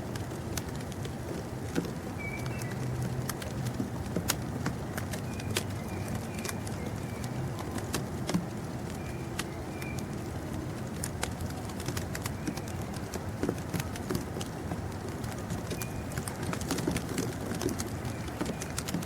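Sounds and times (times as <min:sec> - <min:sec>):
sharp clicks: 0:01.7 - 0:19.0
faint bird chirps: 0:02.2 - 0:02.8.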